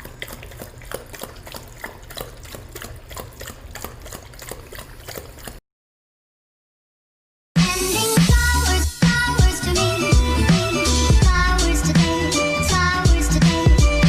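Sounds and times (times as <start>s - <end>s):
dog lapping water: 0.0s - 5.6s.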